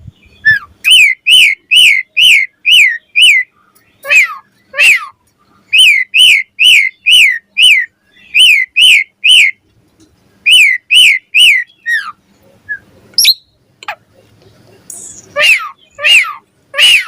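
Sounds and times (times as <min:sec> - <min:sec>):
starling whistled song: 0:00.2 - 0:05.1, 0:05.7 - 0:09.6, 0:10.4 - 0:13.6.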